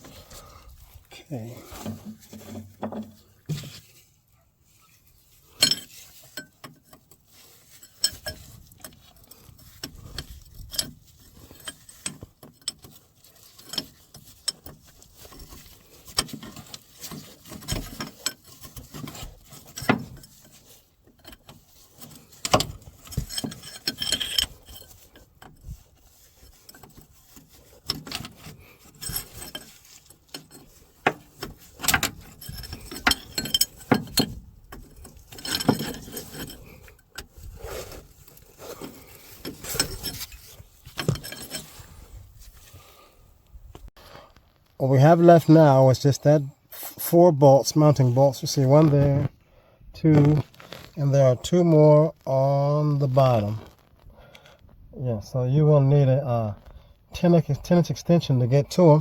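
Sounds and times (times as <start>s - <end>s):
metal hand tools clinking: 5.5s - 37.3s, 38.3s - 41.9s.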